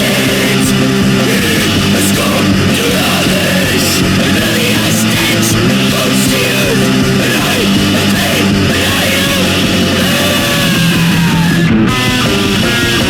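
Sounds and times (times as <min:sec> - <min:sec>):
heavy metal music: 0:00.0 - 0:13.0.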